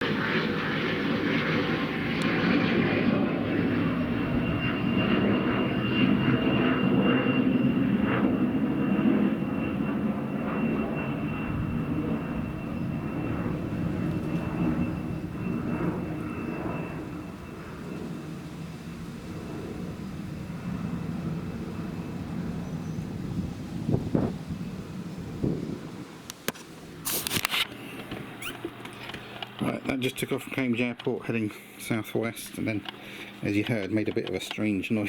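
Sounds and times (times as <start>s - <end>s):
high-pitched jet engine whine: 0.0s - 35.0s
jet engine rumble: 0.0s - 35.0s.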